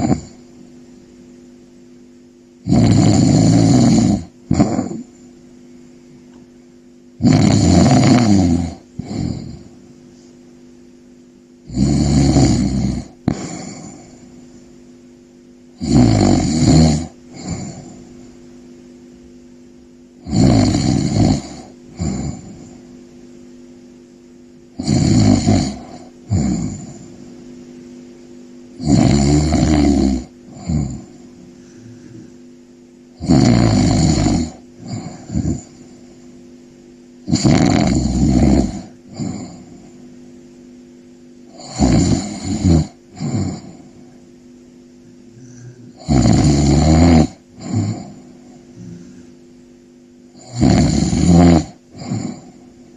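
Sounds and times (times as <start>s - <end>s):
person snoring: 0.0s - 0.5s, 2.6s - 5.2s, 7.2s - 9.8s, 11.6s - 14.4s, 15.8s - 18.4s, 20.2s - 22.9s, 24.7s - 27.3s, 28.8s - 32.4s, 33.1s - 36.2s, 37.2s - 40.0s, 41.5s - 44.2s, 45.0s - 49.4s, 50.3s - 52.8s
faint steady hum: 0.0s - 52.9s
soft breathing out: 30.5s - 32.5s, 34.8s - 36.3s, 45.0s - 46.1s, 47.6s - 49.5s.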